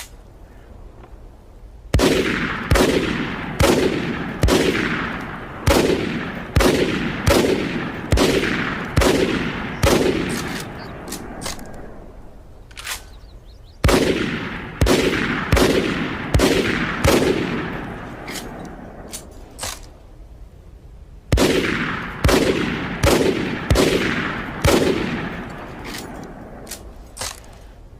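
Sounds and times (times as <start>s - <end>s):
loud echoing bangs: 1.9s - 12.1s, 13.8s - 19.1s, 21.3s - 26.6s.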